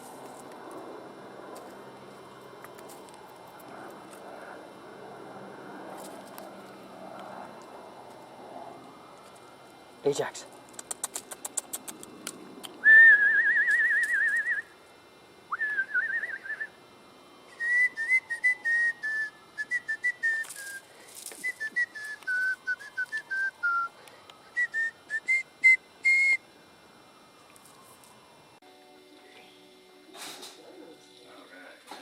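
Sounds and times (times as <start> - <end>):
person whistling: 12.8 - 14.7, 15.5 - 16.7, 17.5 - 20.8, 21.4 - 23.9, 24.5 - 26.4.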